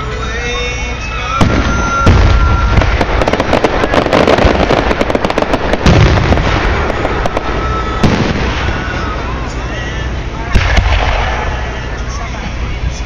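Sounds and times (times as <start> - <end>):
fireworks crackling pops: 1.3 - 12.7
firework shells booming: 1.4 - 9.3, 10.5 - 11.9.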